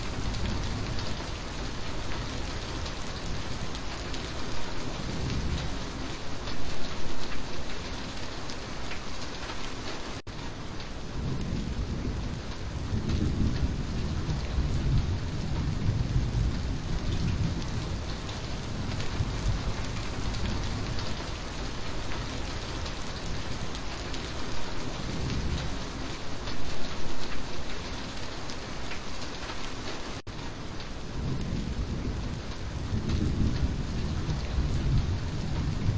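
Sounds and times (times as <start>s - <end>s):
rolling thunder rumble: 0.0s - 6.2s, 11.0s - 26.2s, 31.0s - 35.9s
steady rain falling: 0.0s - 35.9s.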